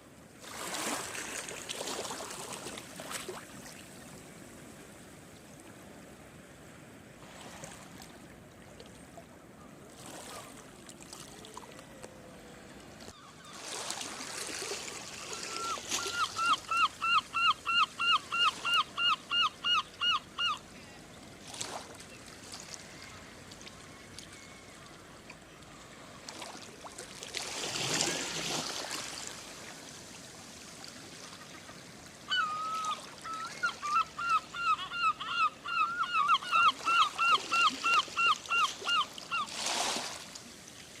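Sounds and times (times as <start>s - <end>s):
gull calling: 15.1s - 20.6s, 32.3s - 39.5s.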